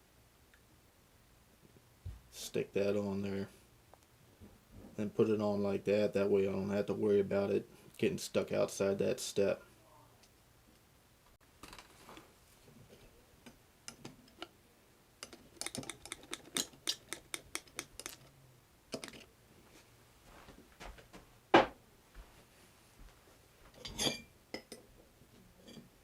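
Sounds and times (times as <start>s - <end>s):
small steel parts clicking: 15.2s - 18.3s.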